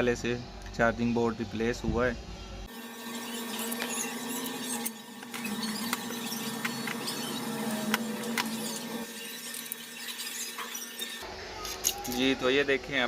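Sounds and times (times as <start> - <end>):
small tools clicking and tapping: 11.6 - 12.3.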